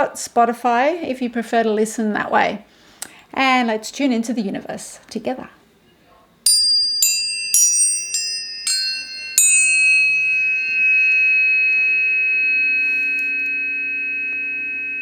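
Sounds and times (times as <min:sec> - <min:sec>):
tuning forks ringing: 0:06.5 - 0:15.0.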